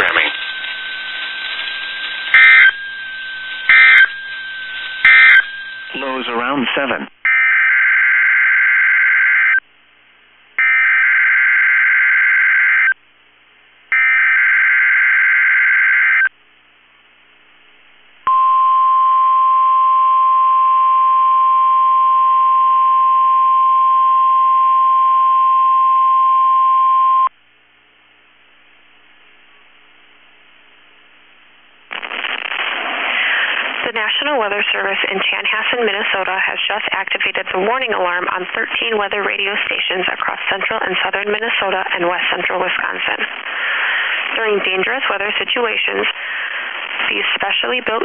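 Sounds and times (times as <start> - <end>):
faint radio hiss and hum: 0.0 - 1.3, 4.8 - 7.2, 16.3 - 18.3, 27.4 - 48.0
warbling digital data bursts: 0.0 - 2.8
steady warning alarm tone: 0.0 - 6.6, 13.9 - 16.3.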